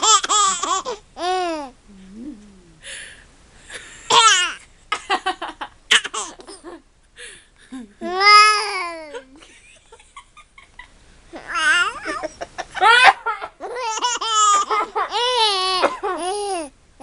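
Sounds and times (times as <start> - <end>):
baby laughing: 0.0 - 1.5, 4.1 - 4.6, 5.9 - 6.6, 11.4 - 16.7.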